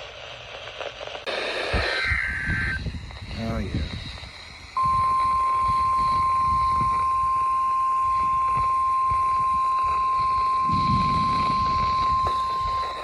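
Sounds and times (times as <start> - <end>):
high-pitched alarm tone: 4.8 - 13.0.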